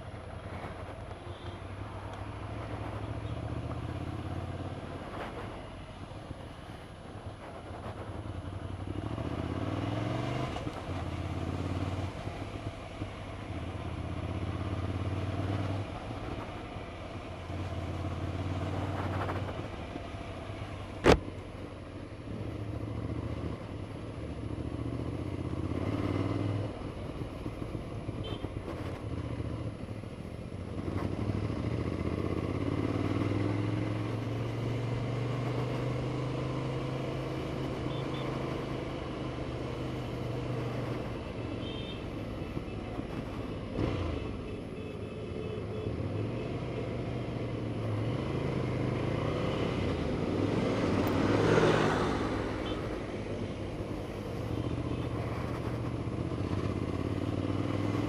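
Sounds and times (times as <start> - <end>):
motorcycle engine revving: 8.6 - 16.5, 24.5 - 26.9, 30.6 - 41.5, 45.7 - 58.0.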